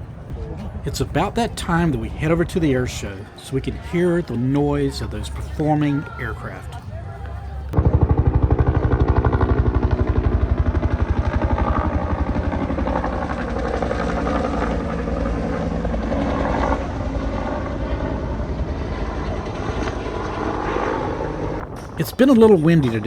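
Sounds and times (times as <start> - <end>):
helicopter rotor beating: 0.0 - 23.0.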